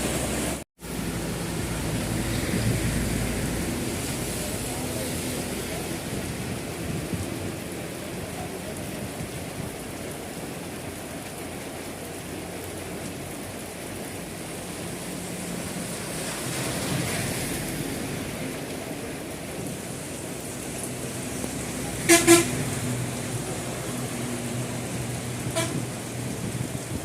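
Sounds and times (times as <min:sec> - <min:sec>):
heavy rain falling: 0:00.0 - 0:27.0.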